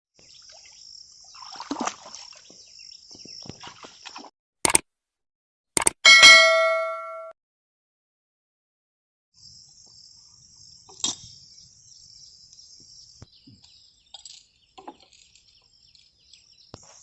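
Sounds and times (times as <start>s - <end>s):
sharp clicks: 4.6s - 4.8s, 5.8s - 6.0s
metallic ding ringing: 6.1s - 7.3s
insect chirring: 9.4s - 17.0s.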